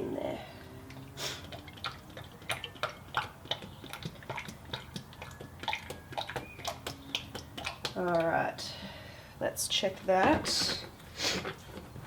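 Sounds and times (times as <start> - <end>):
oil glugging through a funnel: 0.4 - 9.0.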